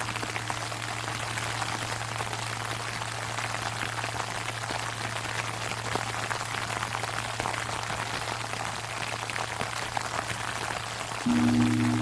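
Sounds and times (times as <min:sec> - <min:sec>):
temple bell humming: 0:11.3 - 0:12.0.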